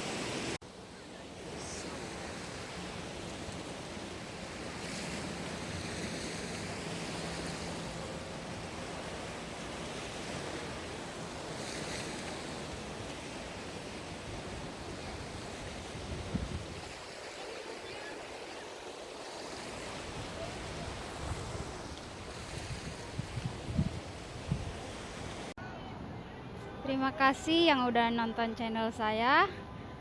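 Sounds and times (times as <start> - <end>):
sea waves washing onto beach: 0.0 - 25.6
wind on microphone: 1.8 - 17.4, 19.2 - 26.2.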